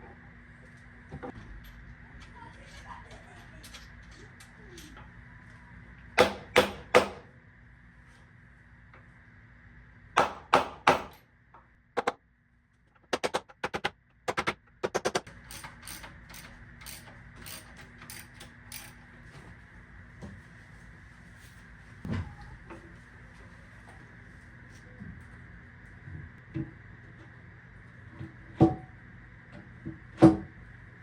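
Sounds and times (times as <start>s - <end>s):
sharp knocks: 6.2s - 7.2s, 13.0s - 15.3s.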